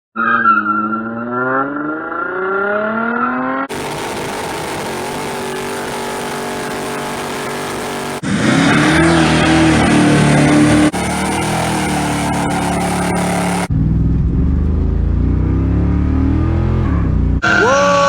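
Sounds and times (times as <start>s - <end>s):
car engine revving: 0.3s - 17.5s
rushing noise: 3.7s - 14.6s.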